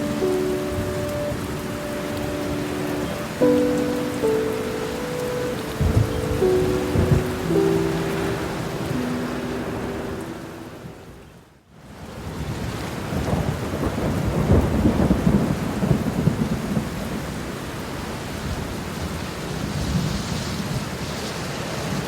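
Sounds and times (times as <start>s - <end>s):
thunder rumbling: 0.0s - 11.0s, 13.0s - 17.8s
steady rain: 0.0s - 22.0s.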